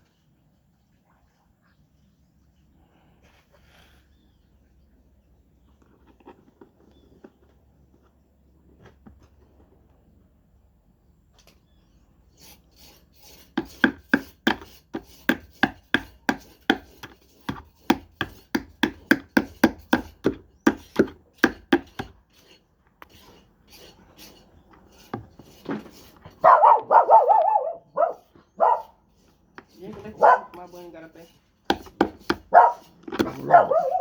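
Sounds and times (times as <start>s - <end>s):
hammering knocks on metal pulley: 13.6s - 22.1s, 31.7s - 32.5s
dog barking: 26.4s - 29.0s, 30.1s - 30.6s, 32.5s - 34.0s.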